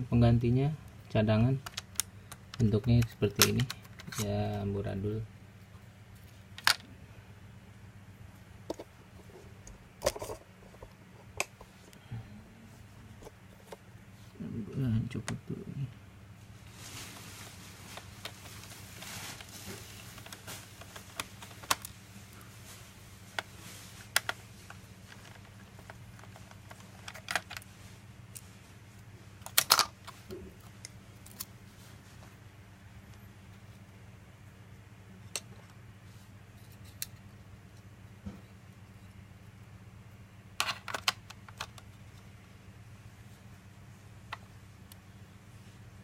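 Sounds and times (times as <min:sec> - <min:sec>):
faint steady low hum: 0:00.0 - 0:46.0
laptop parts clicking: 0:01.6 - 0:04.3
small parts clicking and tapping: 0:01.6 - 0:04.3, 0:24.1 - 0:27.7, 0:29.4 - 0:31.5.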